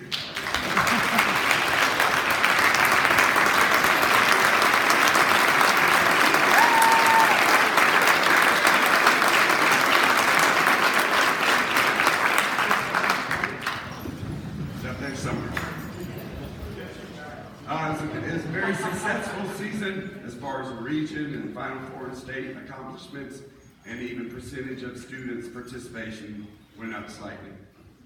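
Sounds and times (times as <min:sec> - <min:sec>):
audience applause: 0:00.0 - 0:15.8.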